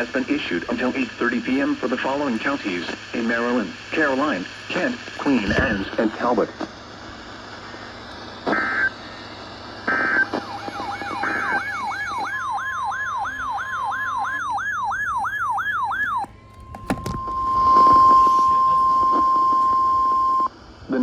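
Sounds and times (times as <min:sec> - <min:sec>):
electronic data bursts: 0:07.6 - 0:21.0
steady electronic tone: 0:07.9 - 0:20.6
electronic yelp siren: 0:08.5 - 0:09.0, 0:09.8 - 0:20.5.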